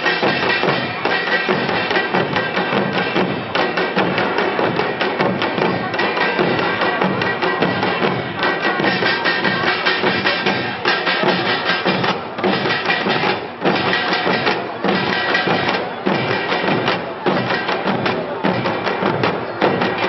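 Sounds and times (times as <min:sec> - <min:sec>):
hourglass drums fast rhythm: 0:00.0 - 0:20.0.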